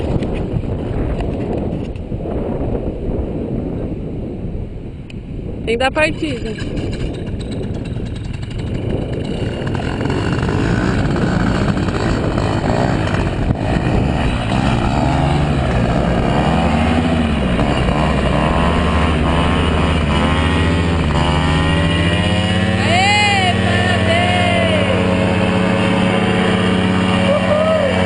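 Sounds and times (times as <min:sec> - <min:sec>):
paramotor engine and propeller: 0:05.6 - 0:28.0.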